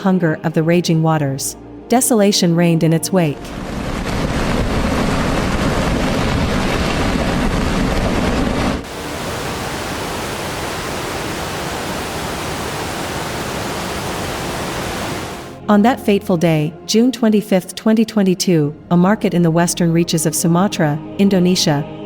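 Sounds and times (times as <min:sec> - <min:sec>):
rushing floodwater: 0:08.8 - 0:15.6.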